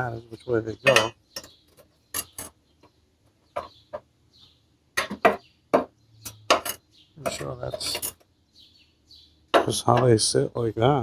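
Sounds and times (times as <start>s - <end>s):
metal clanks and clinks: 0.8s - 2.6s, 5.0s - 8.2s.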